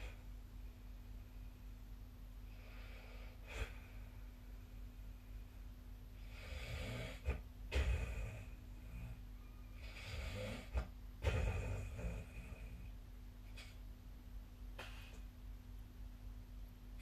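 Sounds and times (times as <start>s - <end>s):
low steady hum: 0.0s - 17.0s
person snoring: 6.2s - 9.2s, 9.8s - 12.9s.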